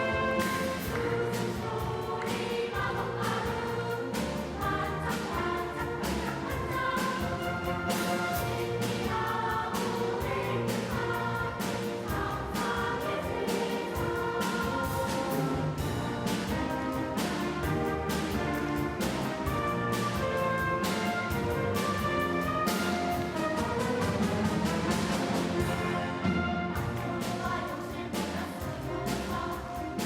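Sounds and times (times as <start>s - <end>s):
children's choir singing: 0.0s - 30.0s
orchestra playing: 0.0s - 30.0s.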